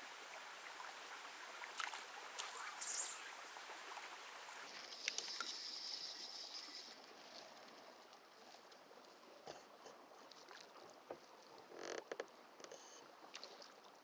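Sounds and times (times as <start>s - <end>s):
brook running: 0.0s - 7.0s
brief rustle: 1.7s - 4.1s.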